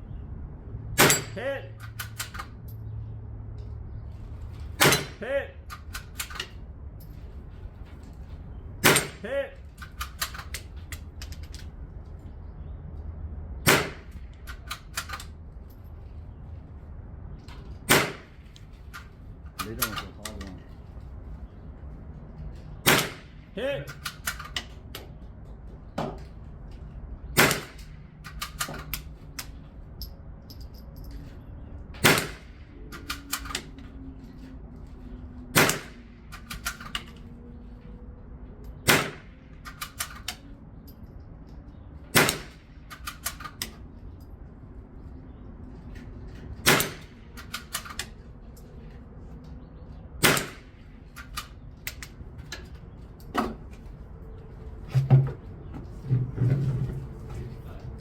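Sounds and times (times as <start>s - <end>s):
sharp gunshots: 1.0s - 1.6s, 4.8s - 5.4s, 8.8s - 9.3s, 13.6s - 14.2s, 17.9s - 18.4s, 22.8s - 23.4s, 27.4s - 27.9s, 32.0s - 32.6s, 35.5s - 36.0s, 38.8s - 39.4s, 42.1s - 42.7s, 46.6s - 47.2s, 50.2s - 50.8s.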